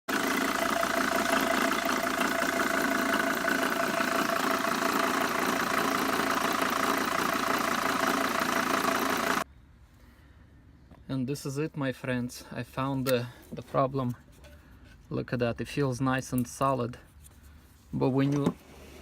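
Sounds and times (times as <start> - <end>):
van engine idling: 0.1 - 9.4.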